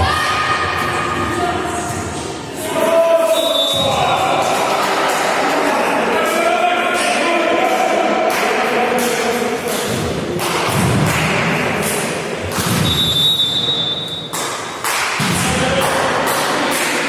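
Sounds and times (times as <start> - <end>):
ball thudding in sports hall: 12.4 - 13.3.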